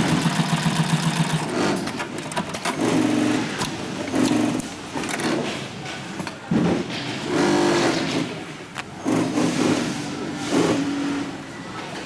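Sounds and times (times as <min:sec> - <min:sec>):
industrial sewing machine stitching: 0:00.0 - 0:05.4, 0:09.0 - 0:09.8.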